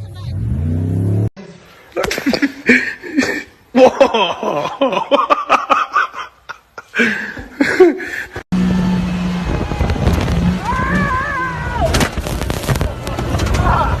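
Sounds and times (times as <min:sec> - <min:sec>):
vehicle engine running loudly: 0:08.5 - 0:11.6
people talking and laughing: 0:12.7 - 0:14.0.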